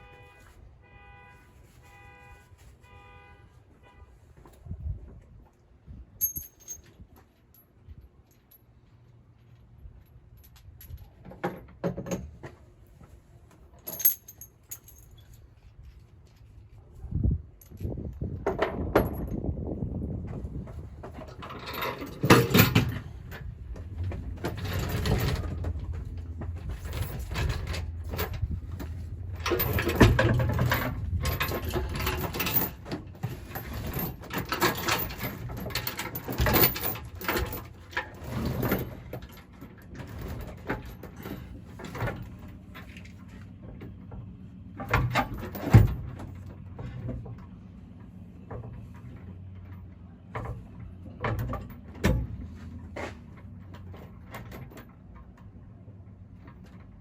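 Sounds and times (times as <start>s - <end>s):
heavy steel knocking and scraping: 20.2s - 47.6s.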